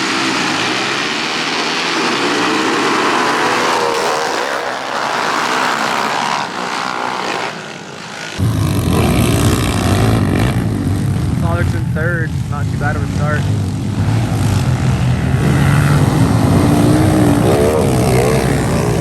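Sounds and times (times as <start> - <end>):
pit bike engines revving: 0.0 - 19.0
loud deep rumble: 8.4 - 19.0.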